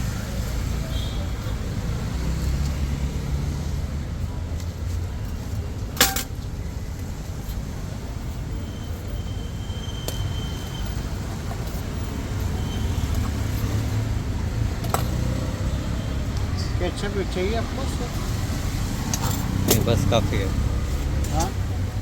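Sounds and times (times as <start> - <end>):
street traffic rumble: 0.0 - 22.0.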